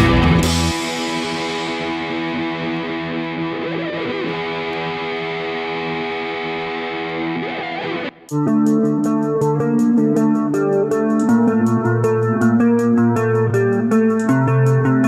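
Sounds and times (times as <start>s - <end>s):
band playing a quick beat: 0.0s - 2.3s
distorted electric guitar chords: 0.0s - 15.0s.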